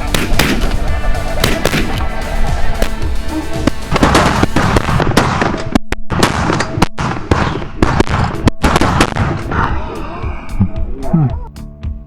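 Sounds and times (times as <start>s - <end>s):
shotguns firing in volleys: 0.0s - 2.2s, 3.6s - 9.5s.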